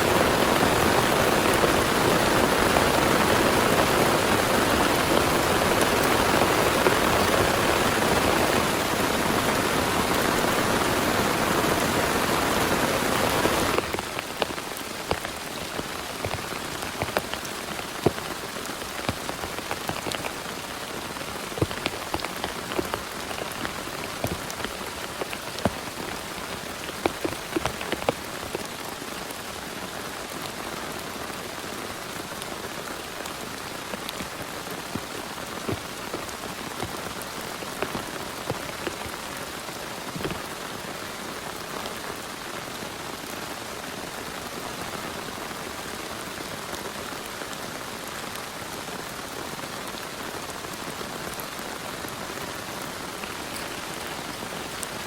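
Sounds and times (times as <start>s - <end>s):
heavy rain hiss: 0.0s - 55.0s
raindrops striking a surface: 0.0s - 55.0s.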